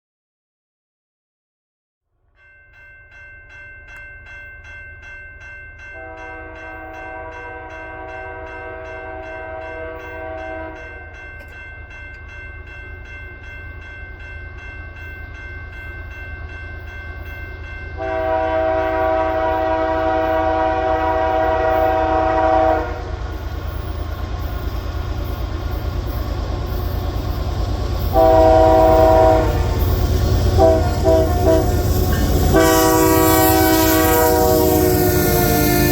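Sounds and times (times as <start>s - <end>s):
train air horn chord: 6.0s - 11.0s, 18.0s - 23.2s, 28.1s - 35.9s
diesel locomotive rumble: 18.0s - 35.9s.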